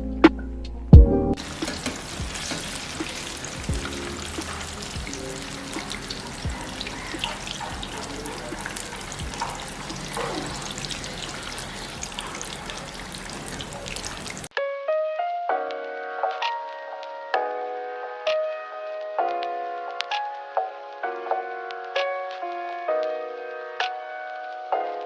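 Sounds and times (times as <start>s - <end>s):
background music with picked notes: 0.0s - 9.4s, 14.5s - 25.0s
chicken deep-frying in oil: 1.4s - 14.5s.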